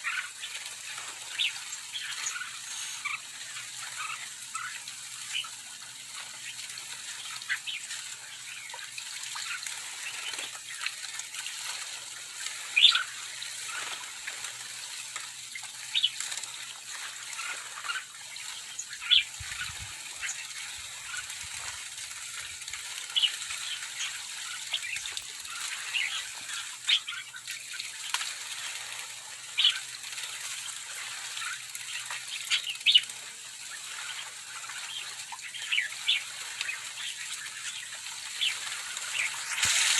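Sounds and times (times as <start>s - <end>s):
splashing water: 0.0s - 39.9s
birds chirping: 1.3s - 5.6s, 17.4s - 21.4s, 22.6s - 28.0s, 31.4s - 33.1s, 33.7s - 39.9s
flapping wings: 38.6s - 39.9s.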